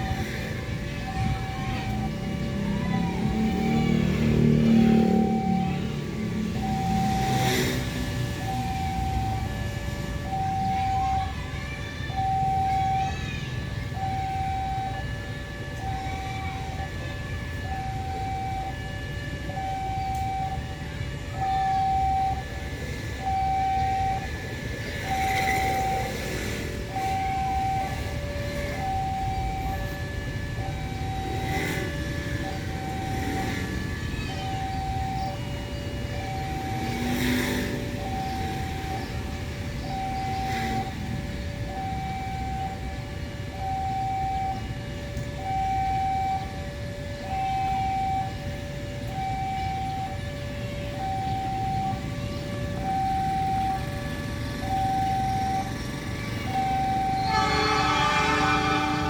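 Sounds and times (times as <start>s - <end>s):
level-crossing warning tone: 0.0s - 59.0s.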